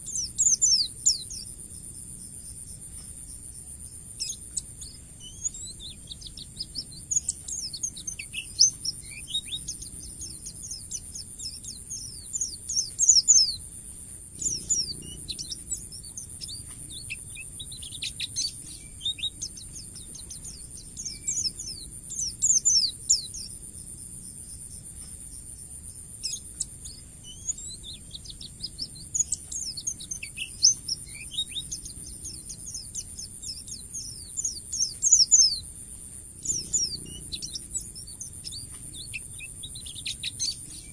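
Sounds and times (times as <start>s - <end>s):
steady high-pitched hum: 0.0s - 40.9s.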